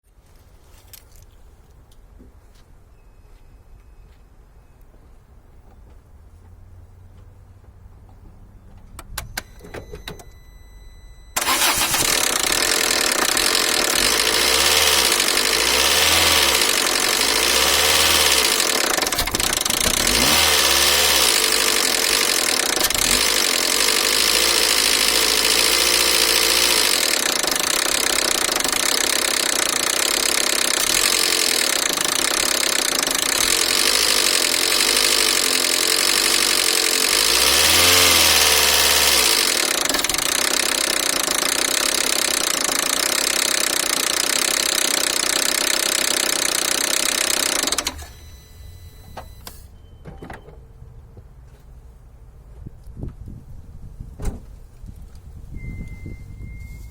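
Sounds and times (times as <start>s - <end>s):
engine starter clicks: 11.3s - 49.7s
car engine knocking and revving: 11.4s - 48.2s.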